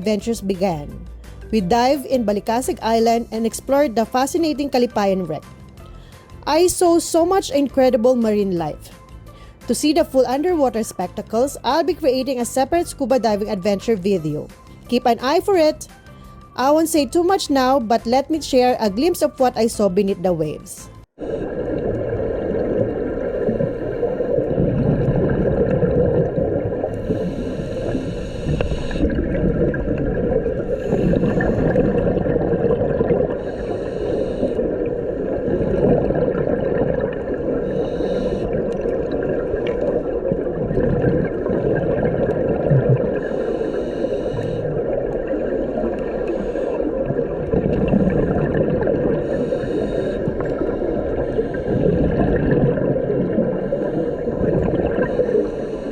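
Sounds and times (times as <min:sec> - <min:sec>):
exhaled bubbles rushing: 0:21.2 - 0:33.8, 0:34.4 - 0:43.4, 0:44.6 - 0:55.5
steady low underwater rumble: 0:21.2 - 0:55.9.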